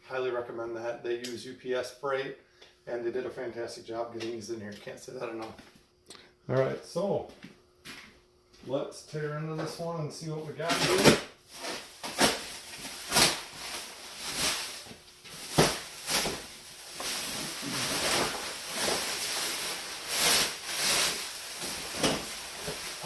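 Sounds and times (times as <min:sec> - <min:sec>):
packaging tearing and rustling: 0:10.6 - 0:23.0.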